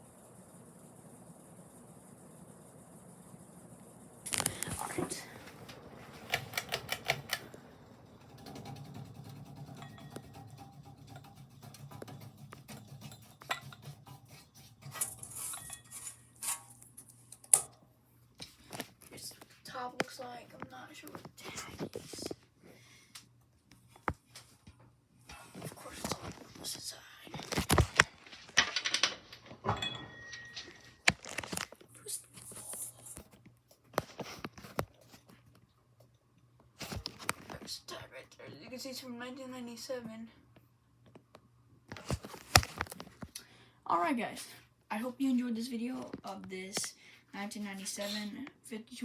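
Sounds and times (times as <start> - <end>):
ceiling fan humming and ticking: 0.0 - 49.0
loud clicks and knocks: 8.2 - 15.2.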